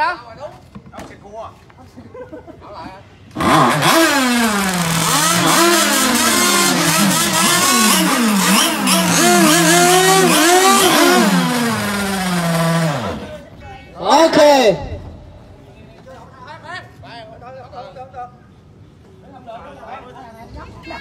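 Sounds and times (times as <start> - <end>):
small two-stroke engine revving: 3.3 - 13.4.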